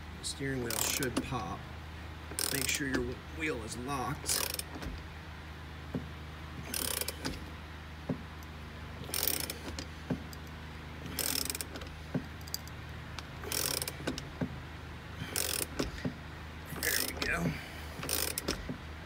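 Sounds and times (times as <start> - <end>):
hand ratchet clicking: 0.7 - 1.3, 2.3 - 3.1, 4.2 - 5.0, 6.6 - 7.4, 9.0 - 10.5, 11.1 - 14.3, 15.2 - 18.8.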